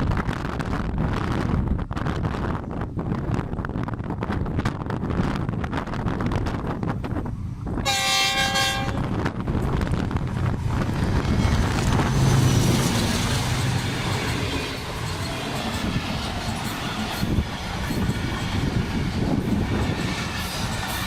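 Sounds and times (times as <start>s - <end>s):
train wheels and carriages rumbling: 0.0s - 21.0s
wind buffeting microphone: 0.0s - 21.0s
locomotive horn blast: 7.8s - 9.2s.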